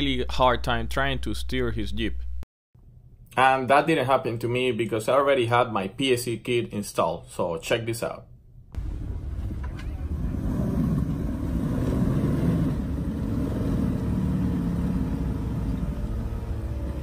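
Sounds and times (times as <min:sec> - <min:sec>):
car engine rumbling: 0:08.7 - 0:17.0.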